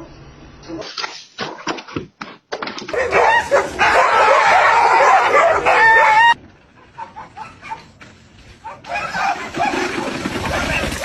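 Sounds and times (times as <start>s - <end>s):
dog howling: 3.0s - 6.4s.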